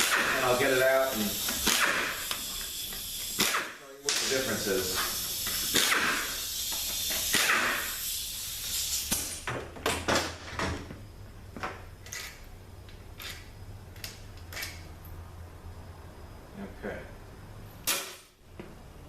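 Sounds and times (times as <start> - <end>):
metallic clicks of tools and bolts: 12.0 - 14.9.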